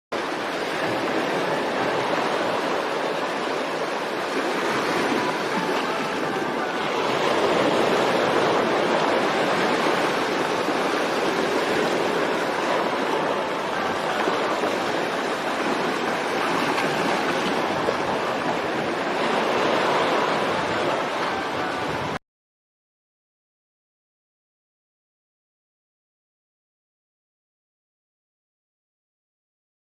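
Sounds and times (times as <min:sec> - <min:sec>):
churning sea water: 0:00.1 - 0:22.2
wind buffeting microphone: 0:00.2 - 0:22.2.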